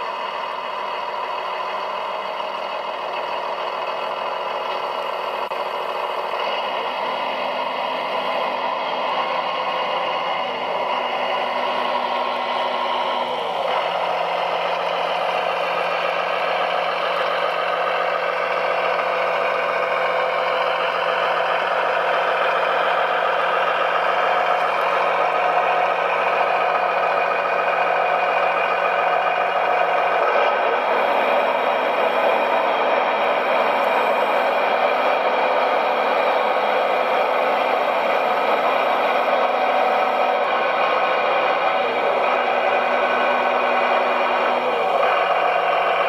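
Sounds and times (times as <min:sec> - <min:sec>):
motor whine and hum: 0:00.0 - 0:46.0.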